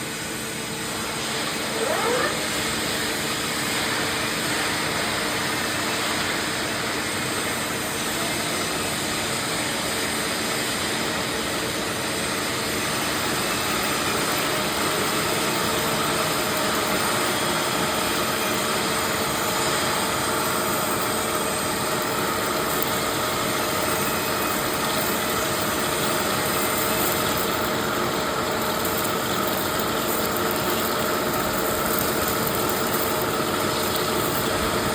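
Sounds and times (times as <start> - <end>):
drilling machine running: 12.6 - 34.9.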